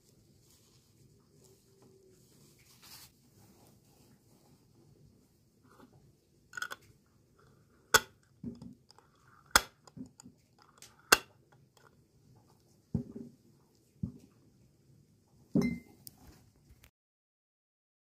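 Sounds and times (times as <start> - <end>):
glass jars and metal lids knocking: 15.6 - 15.9.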